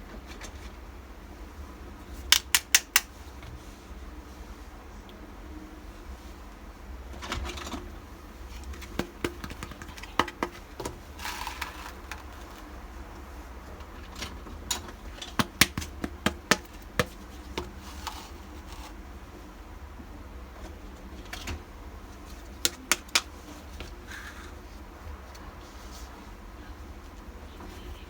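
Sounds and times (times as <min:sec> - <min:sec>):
toy pieces clicking and tapping: 0:02.3 - 0:03.1
rustling scrapes: 0:11.0 - 0:12.8, 0:17.7 - 0:19.0.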